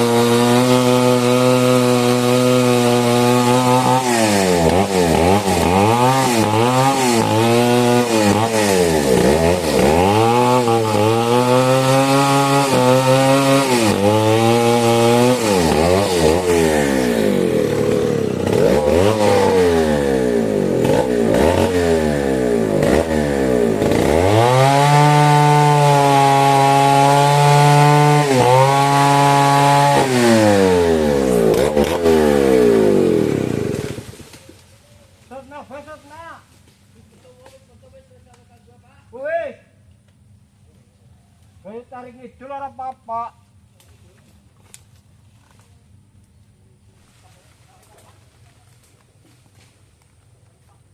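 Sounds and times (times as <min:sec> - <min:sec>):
chainsaw cutting wood: 0:00.0 - 0:34.5.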